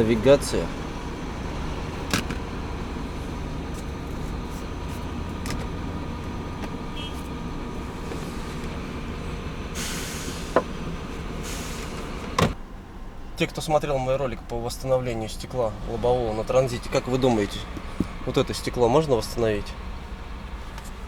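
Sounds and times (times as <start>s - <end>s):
vehicle rumble: 0.0s - 21.0s
hiss: 9.8s - 10.7s, 11.4s - 12.2s.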